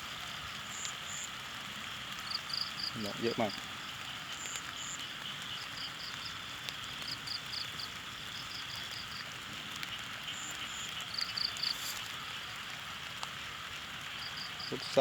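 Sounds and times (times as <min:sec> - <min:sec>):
rain hiss: 0:00.0 - 0:15.0
high insect chirps: 0:02.2 - 0:09.3, 0:09.9 - 0:12.6.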